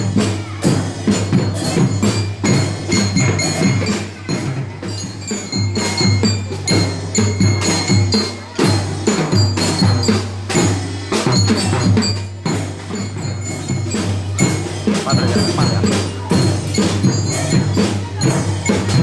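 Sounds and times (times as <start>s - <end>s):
marching band drums: 0.0s - 19.0s
ringing bell tones: 0.6s - 19.0s.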